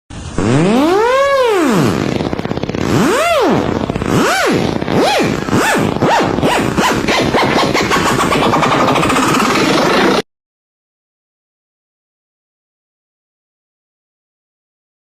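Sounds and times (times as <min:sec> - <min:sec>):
electronic swooping warble tone: 0:00.2 - 0:10.2.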